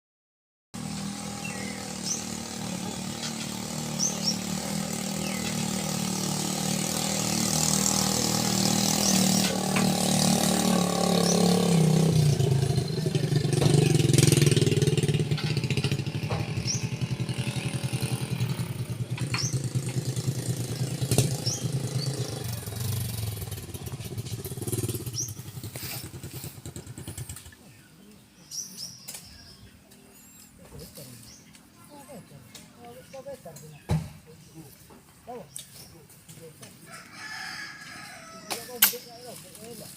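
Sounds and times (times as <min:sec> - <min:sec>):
vehicle engine running: 0:00.8 - 0:27.9.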